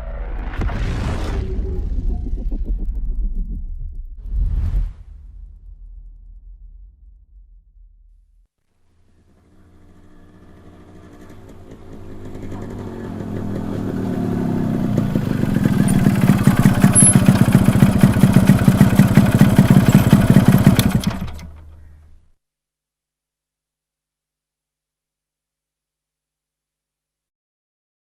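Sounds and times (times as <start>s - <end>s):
motorcycle engine: 8.8s - 22.2s.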